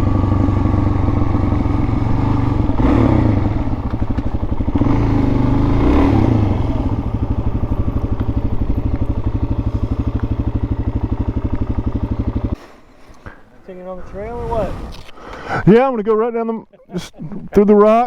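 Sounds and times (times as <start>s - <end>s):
dirt bike engine revving and idling: 0.0s - 12.6s.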